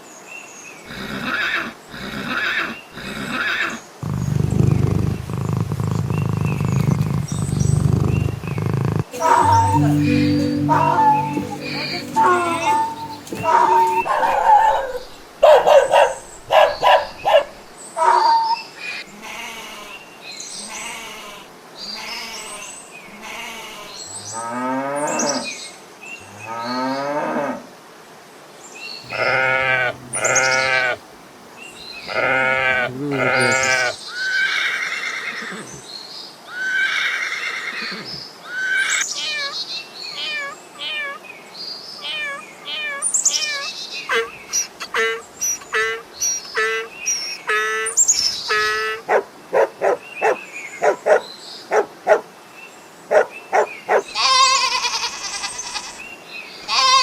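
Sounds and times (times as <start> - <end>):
farm animals crying and bleating: 9.1 - 14.1, 29.1 - 31.0, 31.8 - 35.8, 42.0 - 47.8, 54.2 - 56.1, 56.7 - 57.0.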